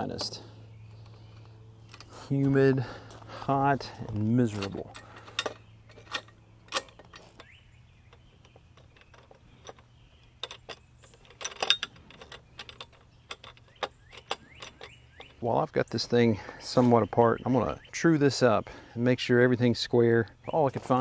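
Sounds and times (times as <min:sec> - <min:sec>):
metal hardware clicking: 0:04.1 - 0:15.4.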